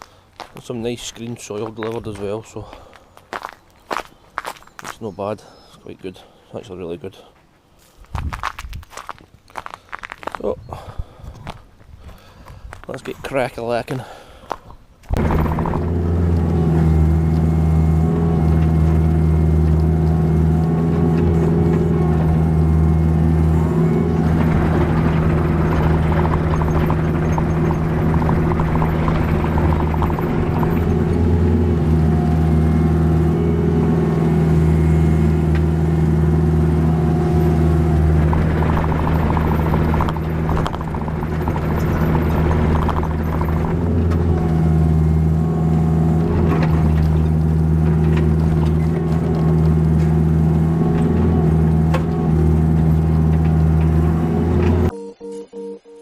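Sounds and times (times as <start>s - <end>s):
excavator diesel engine running: 15.1s - 54.9s.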